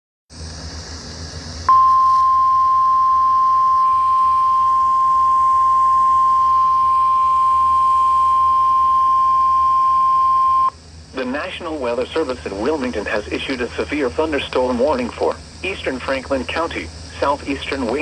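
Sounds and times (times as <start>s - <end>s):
radio hiss: 0.4s - 18.0s
high-pitched alarm tone: 1.7s - 10.8s.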